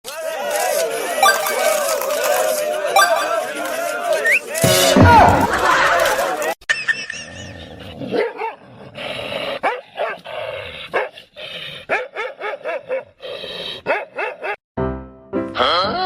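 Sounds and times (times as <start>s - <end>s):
dog barking: 8.1s - 8.6s, 9.6s - 10.2s, 11.9s - 13.1s, 13.8s - 14.6s.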